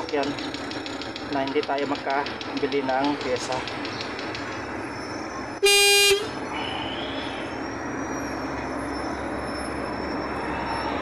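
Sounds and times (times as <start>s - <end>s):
highway traffic noise: 0.0s - 11.0s
vehicle horn beep: 5.6s - 6.4s.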